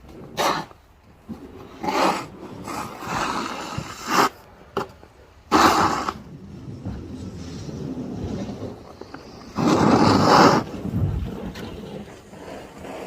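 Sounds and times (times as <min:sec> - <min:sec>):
snow shovel scraping snow: 0:01.4 - 0:04.4, 0:05.5 - 0:13.0.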